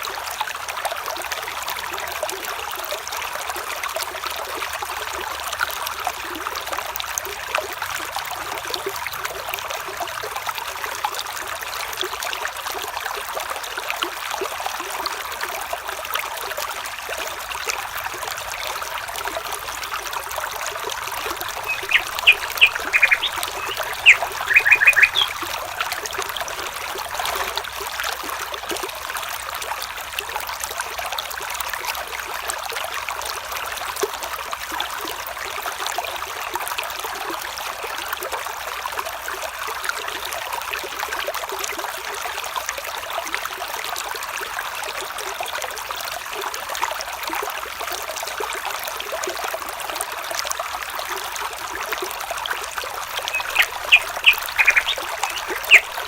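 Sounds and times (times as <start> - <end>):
water trickling: 0.0 - 41.6, 48.6 - 56.0
bird chirping: 21.2 - 26.3, 53.1 - 56.0.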